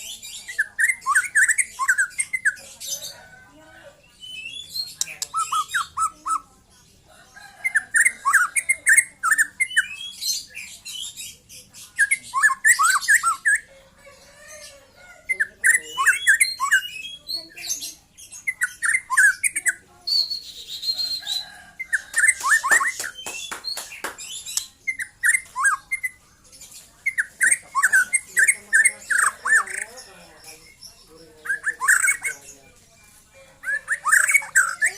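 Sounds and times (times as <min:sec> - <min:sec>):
bird singing whistled notes: 0:18.4 - 0:26.2
bird clicks: 0:22.0 - 0:24.7.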